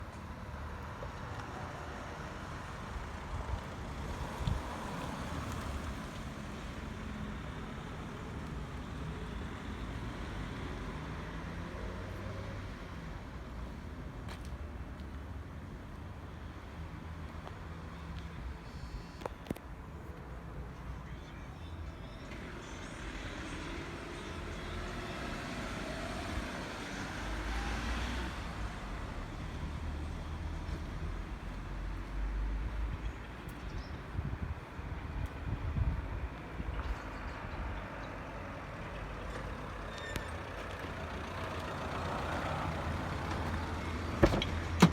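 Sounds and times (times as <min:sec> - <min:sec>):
motor vehicle rumble: 0:25.4 - 0:44.9.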